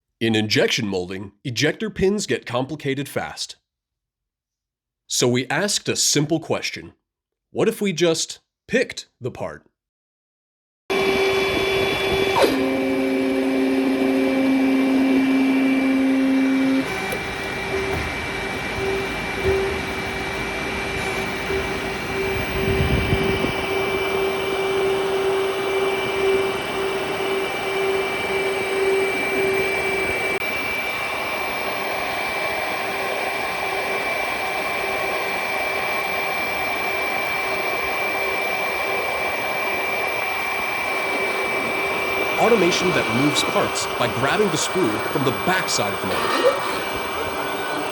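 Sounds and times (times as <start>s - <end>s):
low motor hum: 10.9s - 47.9s
machine whir with high whine: 10.9s - 47.9s.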